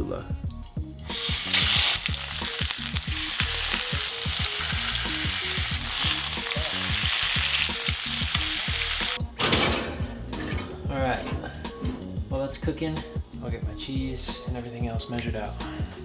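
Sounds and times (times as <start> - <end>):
chicken sizzling in a pan: 1.0 - 9.2.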